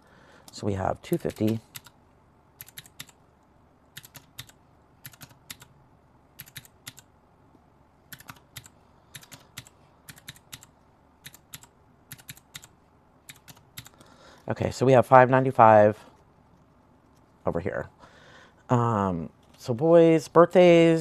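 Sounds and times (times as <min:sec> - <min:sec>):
calculator keys tapping: 0:02.6 - 0:03.2, 0:04.0 - 0:05.7, 0:06.4 - 0:07.0, 0:08.1 - 0:12.7.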